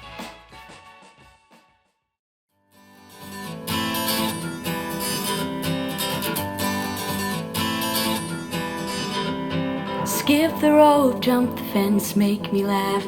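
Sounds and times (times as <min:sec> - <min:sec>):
guitar pop song from speaker: 0:02.8 - 0:13.0.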